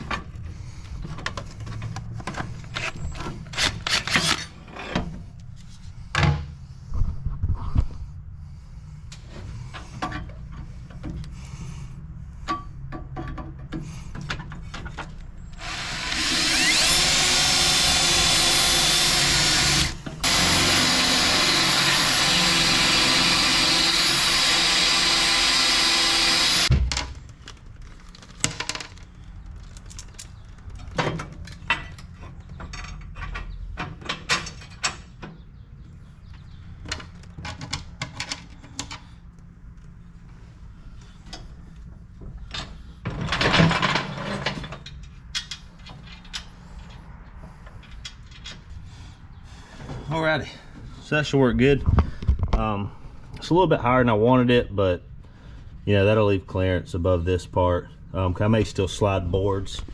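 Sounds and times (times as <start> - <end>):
knocks and clanks of parts: 12.4 - 17.1, 25.8 - 27.2, 30.0 - 35.4, 36.3 - 39.1, 42.2 - 47.0
power tool running: 15.5 - 26.7.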